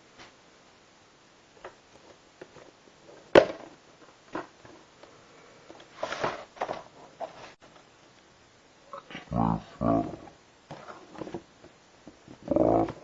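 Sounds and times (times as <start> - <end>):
rustling: 1.7 - 8.3.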